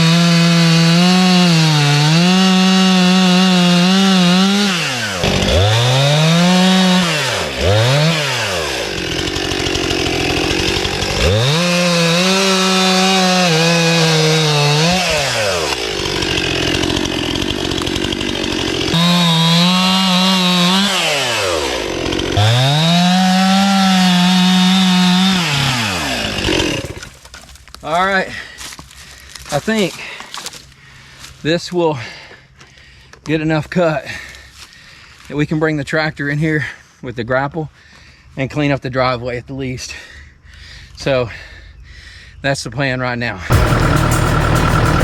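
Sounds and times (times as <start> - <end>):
chainsaw revving: 0.0 - 27.2, 43.5 - 45.0.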